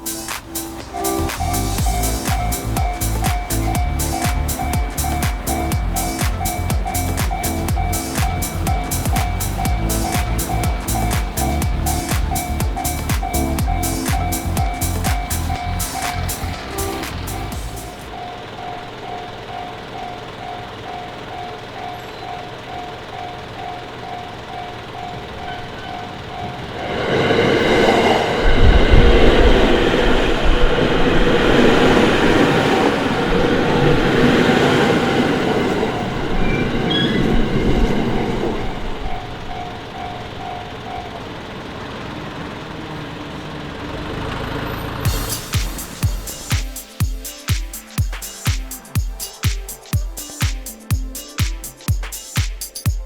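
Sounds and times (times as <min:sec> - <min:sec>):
level crossing bell ringing: 0:00.0 - 0:26.7
train passing over crossing: 0:00.0 - 0:52.2.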